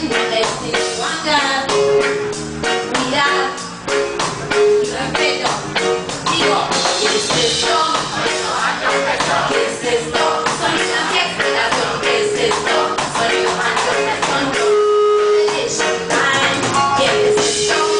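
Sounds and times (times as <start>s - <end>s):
guitar: 0.0s - 17.9s
live reggae band playing: 0.0s - 17.9s
steady drum beat: 1.7s - 14.6s
person singing: 6.3s - 17.9s.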